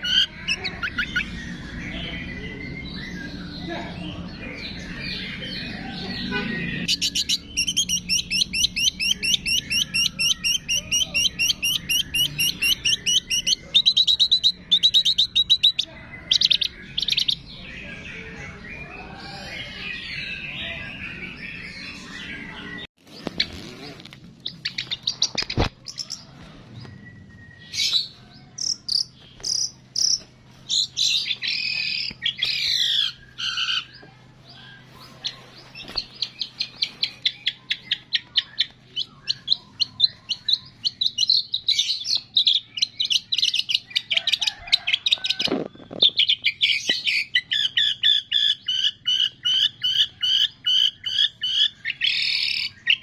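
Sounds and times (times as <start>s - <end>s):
songbirds chirping: 0.0s - 53.0s.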